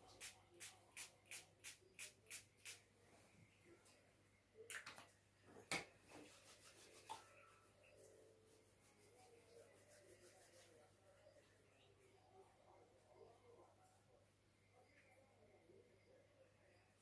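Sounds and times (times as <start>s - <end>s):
hands rubbing: 8.5s - 10.8s.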